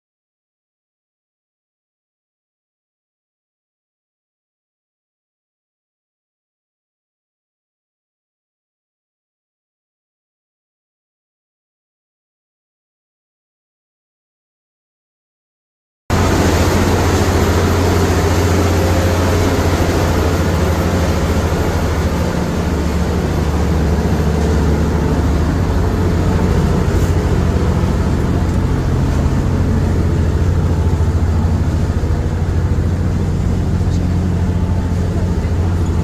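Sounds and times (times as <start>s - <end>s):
motorboat engine droning: 16.1s - 36.0s
water rushing: 16.1s - 36.0s.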